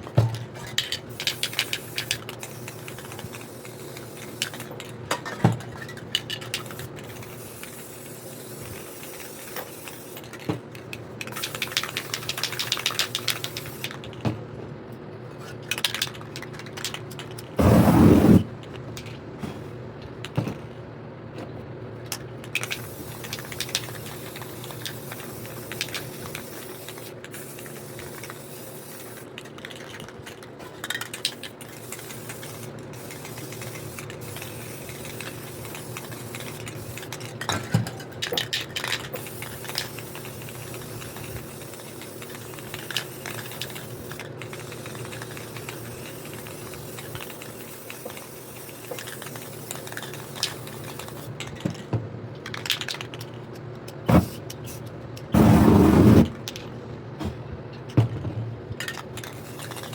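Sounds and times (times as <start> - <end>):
spray paint hissing: 1.1 - 4.7, 6.6 - 10.2, 11.3 - 14.0, 17.6 - 18.5, 22.6 - 29.2, 31.2 - 37.2, 39.2 - 51.3, 55.4 - 56.4, 59.3 - 59.9.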